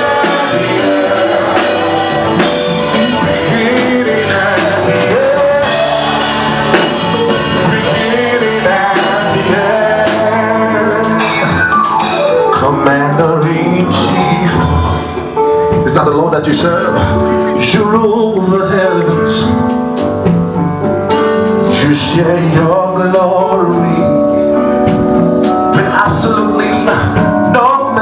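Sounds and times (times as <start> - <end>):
people singing: 0.0 - 11.7
gospel band playing: 0.0 - 28.0.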